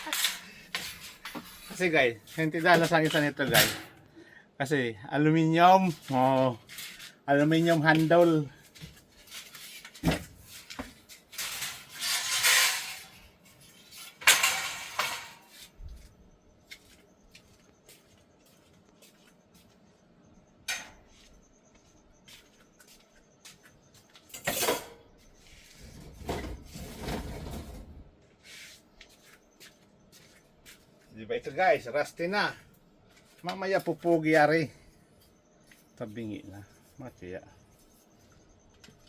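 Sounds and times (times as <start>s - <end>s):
metal parts clattering and scraping: 0.0s - 4.0s, 5.9s - 8.4s, 9.2s - 15.8s, 24.3s - 28.0s.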